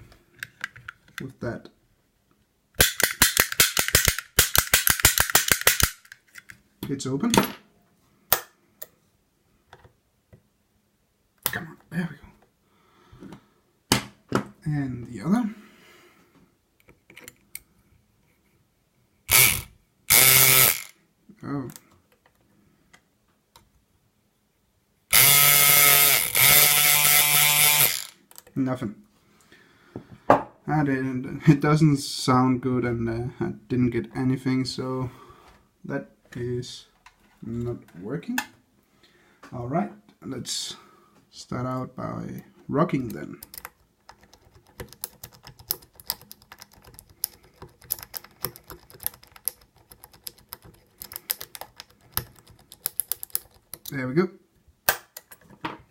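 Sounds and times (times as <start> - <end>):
electric pick gun buzzing: 19.3 - 21.0, 25.1 - 28.2
lock pick clicking in padlock: 43.4 - 53.9.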